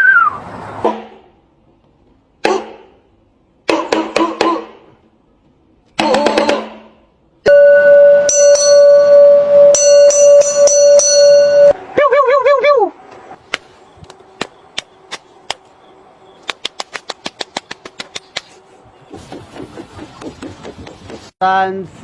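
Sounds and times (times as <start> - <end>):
long electronic tone with pings: 7.5 - 11.8.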